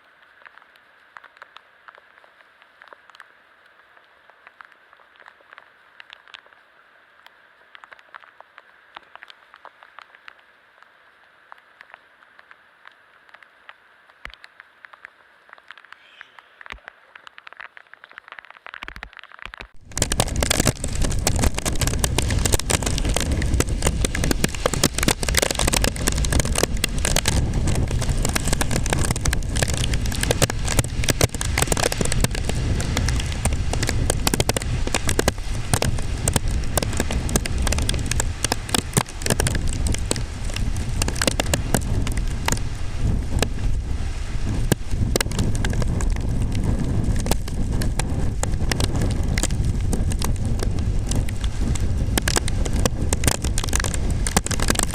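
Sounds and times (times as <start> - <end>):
dense crackling rain: 0.0 - 54.9
wind buffeting microphone: 19.8 - 54.9.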